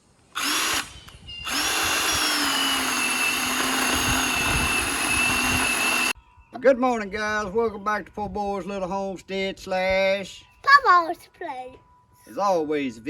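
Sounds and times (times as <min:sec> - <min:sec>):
electric chainsaw motor whine: 0:00.4 - 0:06.2.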